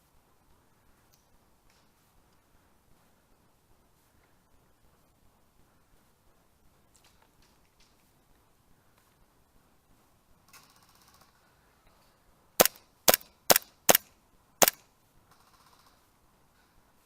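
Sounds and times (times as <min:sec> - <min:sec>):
airsoft gun shots: 0:12.6 - 0:14.8.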